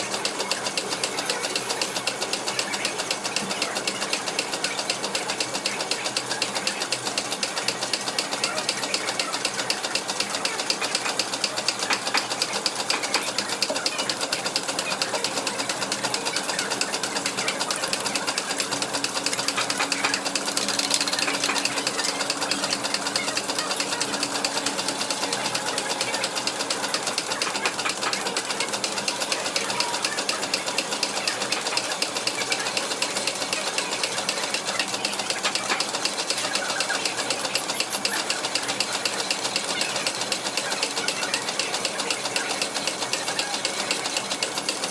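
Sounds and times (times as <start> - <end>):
machine tools clattering: 16.7 - 24.9.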